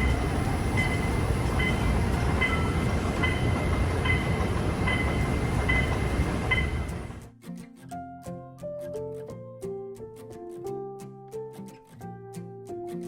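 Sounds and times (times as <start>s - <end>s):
train rumbling: 0.0s - 7.3s.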